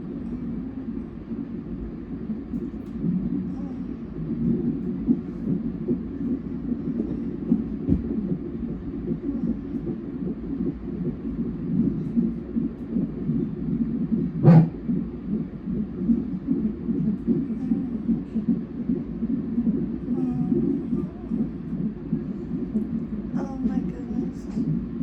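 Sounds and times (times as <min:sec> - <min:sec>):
fetal heartbeat on doppler monitor: 0:00.0 - 0:25.0.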